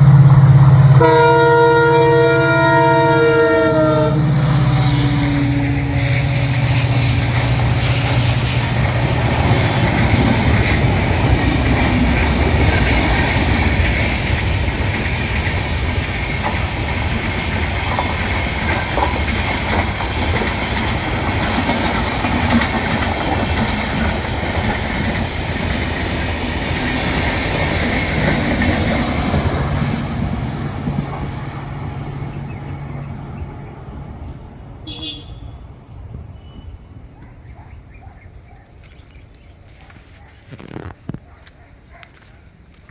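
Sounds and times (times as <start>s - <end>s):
train wheels clattering: 0.0s - 33.1s.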